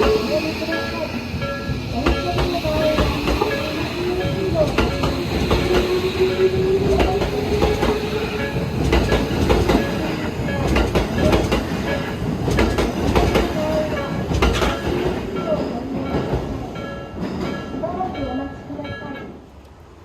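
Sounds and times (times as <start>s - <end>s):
train motor tone: 0.0s - 15.0s.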